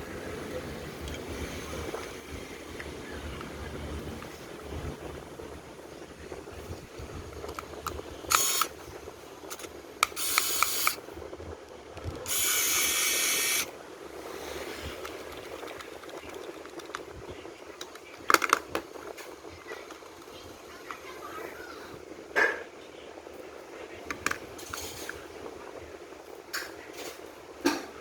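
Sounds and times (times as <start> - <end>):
bursts of hissing: 9.5 - 11.2.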